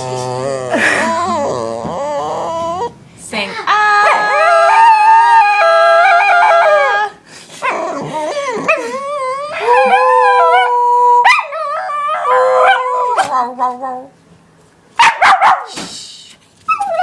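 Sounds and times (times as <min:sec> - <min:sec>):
dog howling: 0:00.0 - 0:03.0, 0:03.7 - 0:13.5.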